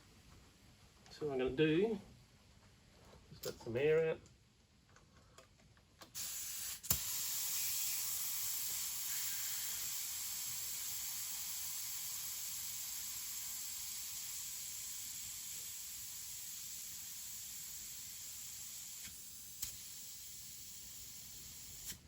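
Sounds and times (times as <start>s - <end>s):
air hissing from tyre valve: 6.1s - 22.0s.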